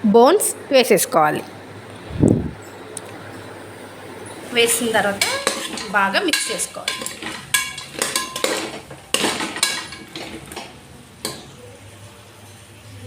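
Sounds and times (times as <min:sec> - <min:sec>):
spoon scraping and clinking in pan: 0:05.2 - 0:10.4.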